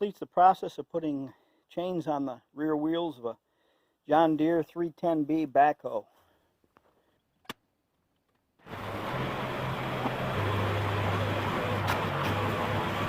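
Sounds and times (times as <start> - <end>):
backhoe diesel engine running: 8.7 - 13.0.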